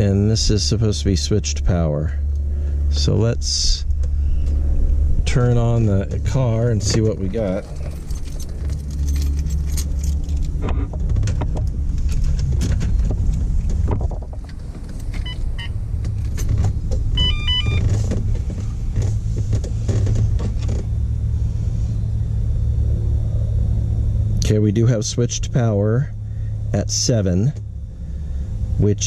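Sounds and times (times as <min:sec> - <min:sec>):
low rumble: 0:00.0 - 0:29.0
keys jangling in ignition: 0:06.7 - 0:13.4, 0:16.1 - 0:16.7
short high electronic beeps: 0:17.2 - 0:17.8.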